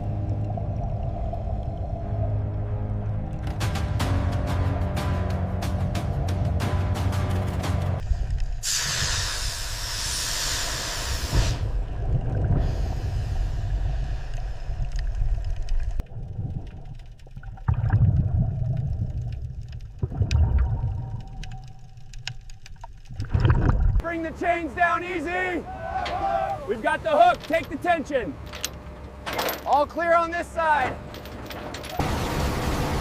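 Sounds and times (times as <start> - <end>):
low rumbling: 0.0 - 8.7, 11.4 - 24.3
air hissing: 8.0 - 11.8
water sloshing: 15.4 - 24.0
faint clicks: 21.0 - 23.2.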